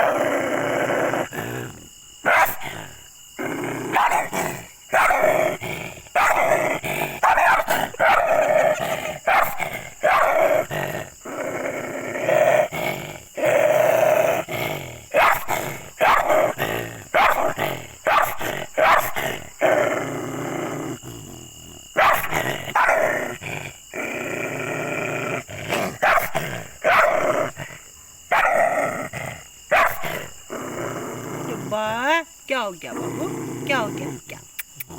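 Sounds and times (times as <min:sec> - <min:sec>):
dog growling: 0:00.0 - 0:32.2, 0:32.8 - 0:34.9
dog barking: 0:02.2 - 0:02.8, 0:03.9 - 0:05.5, 0:06.2 - 0:10.7, 0:15.1 - 0:16.5, 0:17.1 - 0:19.4, 0:22.0 - 0:23.3, 0:25.7 - 0:27.4, 0:28.3 - 0:28.7, 0:29.7 - 0:30.3.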